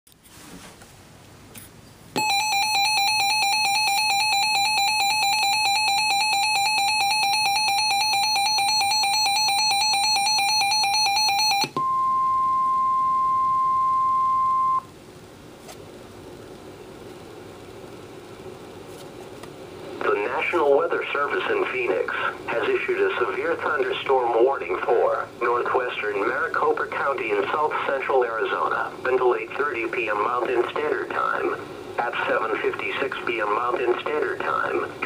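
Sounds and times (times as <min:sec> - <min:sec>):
electronic alarm beeping rapidly: 0:02.2 - 0:14.8
steady warning alarm tone: 0:02.2 - 0:14.9
faint radio hiss: 0:15.2 - 0:35.0.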